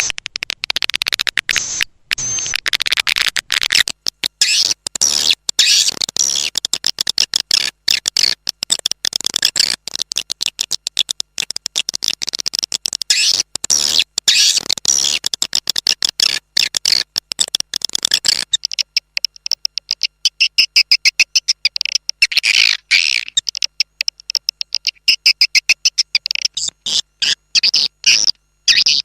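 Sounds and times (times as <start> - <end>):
high-pitched bird twittering: 4.4 - 6.5, 13.1 - 15.2, 17.9 - 29.0.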